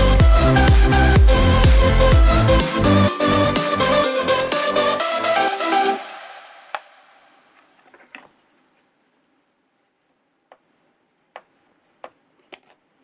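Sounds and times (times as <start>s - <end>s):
background music: 0.0s - 7.3s.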